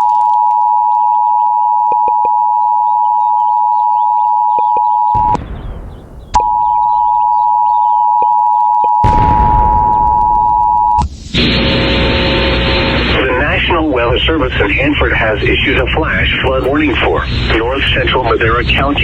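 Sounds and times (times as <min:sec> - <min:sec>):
two-tone alert signal: 0:00.6 - 0:05.2, 0:06.4 - 0:11.0.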